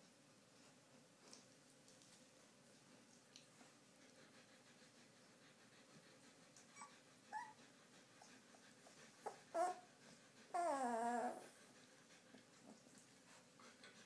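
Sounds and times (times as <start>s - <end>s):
puppies whimpering: 6.6s - 11.6s.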